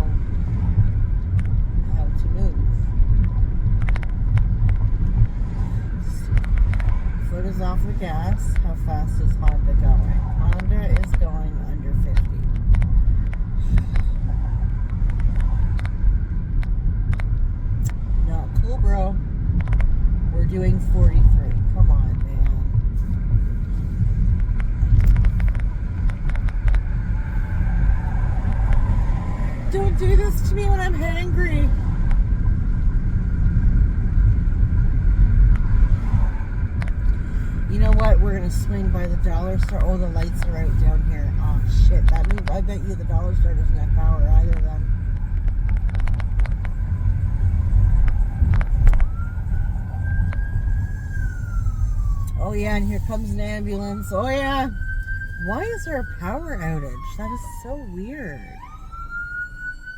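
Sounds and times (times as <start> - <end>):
car road and engine rumble: 0.0 - 59.9
distant ambulance siren wailing: 25.5 - 33.4, 45.0 - 59.9.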